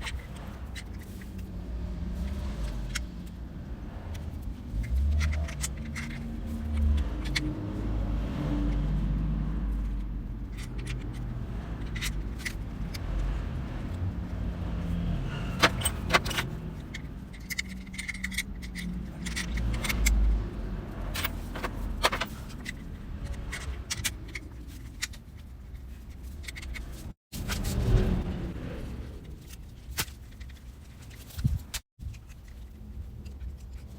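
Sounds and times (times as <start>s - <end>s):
metal tools and bolts clinking: 4.1s - 7.6s, 15.3s - 27.8s.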